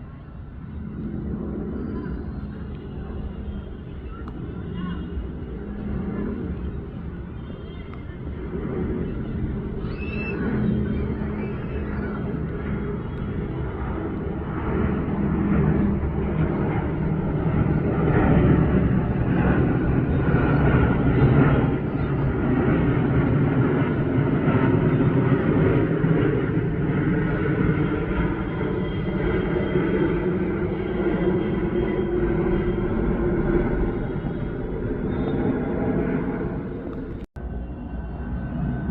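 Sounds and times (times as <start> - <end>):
jet engines rumbling: 0.0 - 38.9.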